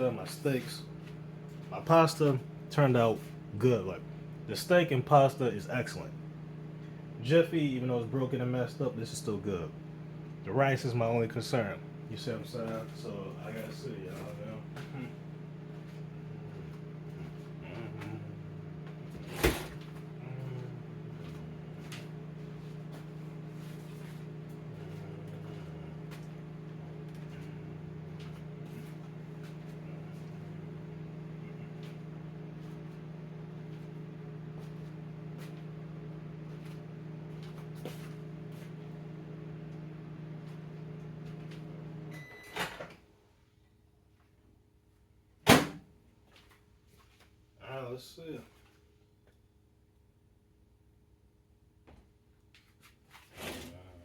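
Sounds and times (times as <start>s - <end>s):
microwave oven humming: 0.0s - 54.0s
microwave beep: 40.9s - 42.9s.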